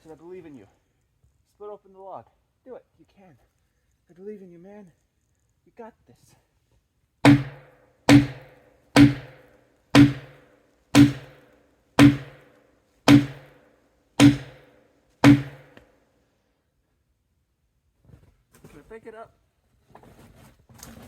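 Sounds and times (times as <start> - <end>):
hatchet struck into log: 7.3 - 10.4, 11.0 - 11.4, 12.0 - 12.5, 13.1 - 13.6, 14.2 - 15.8.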